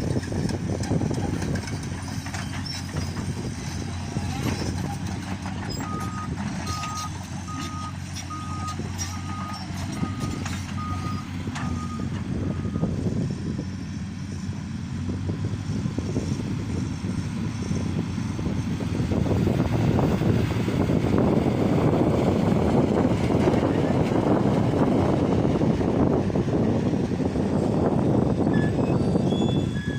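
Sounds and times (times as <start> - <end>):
diesel engine running: 0.0 - 29.9
reversing alarm beeping: 5.8 - 12.9.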